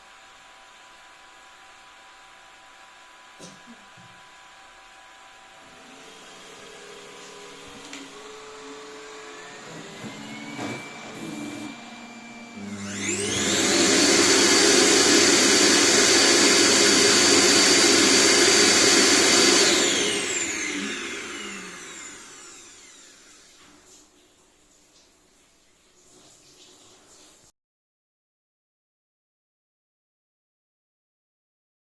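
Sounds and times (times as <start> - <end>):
suction motor whine: 0.0 - 23.5
robot vacuum whirring and clicks: 6.0 - 23.4.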